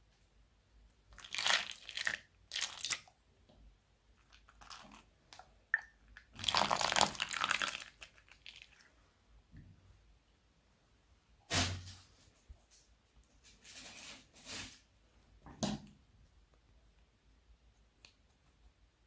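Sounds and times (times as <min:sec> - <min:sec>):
slime squeezed in plastic bags: 0:01.2 - 0:03.1, 0:06.1 - 0:08.9.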